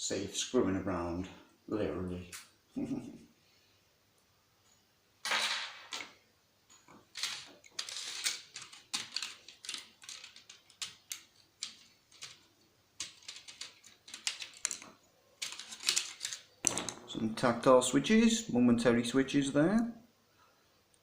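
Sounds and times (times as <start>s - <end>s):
plastic parts clicking and clattering: 6.9s - 17.2s.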